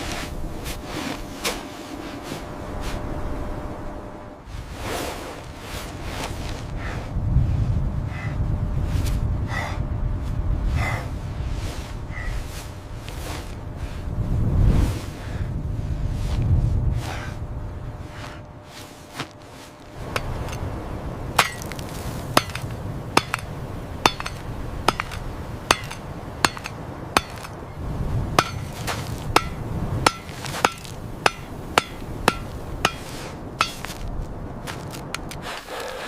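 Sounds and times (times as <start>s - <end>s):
low rumble: 2.0s - 35.2s
hammering blows with metallic ring: 20.0s - 20.7s, 21.4s - 27.7s, 28.3s - 34.1s.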